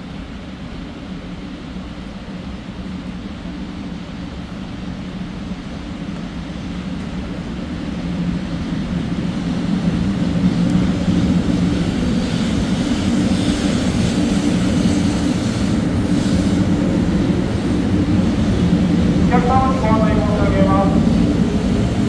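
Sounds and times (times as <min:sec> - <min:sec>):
train rumble: 0:00.0 - 0:22.0
rushing hiss: 0:11.4 - 0:19.2.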